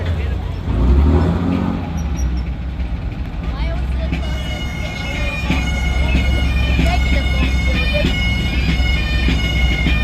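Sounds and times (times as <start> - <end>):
bagpipes playing a tune: 3.6 - 10.0.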